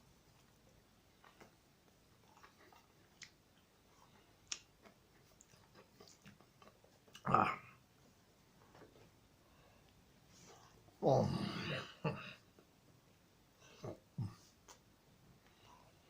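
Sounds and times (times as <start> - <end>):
person chewing: 1.2 - 7.3
wet mouth clicks and smacks: 2.3 - 3.4, 4.4 - 7.3.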